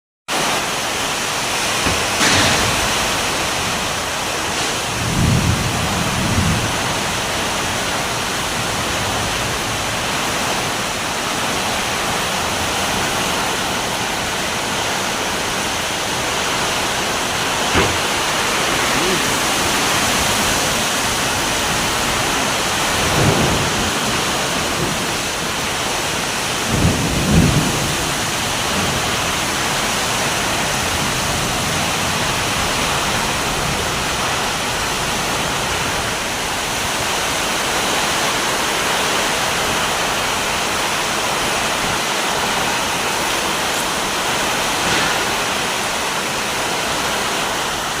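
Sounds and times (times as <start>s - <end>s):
heavy rain falling: 0.3s - 48.0s
low thunder rumbles: 1.9s - 36.8s.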